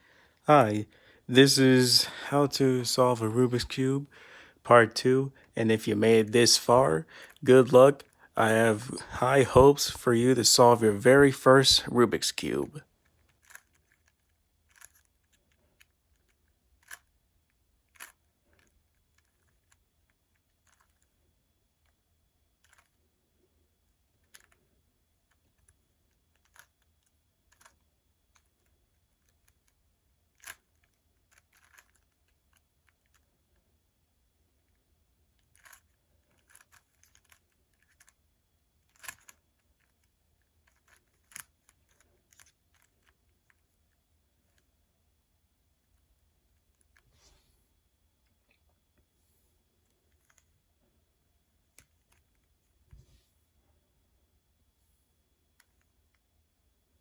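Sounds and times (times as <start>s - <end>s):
quiet room hiss: 0.0s - 57.0s
rubik's cube plastic clicks: 13.1s - 21.2s, 25.4s - 33.3s, 35.4s - 38.2s, 38.8s - 43.7s.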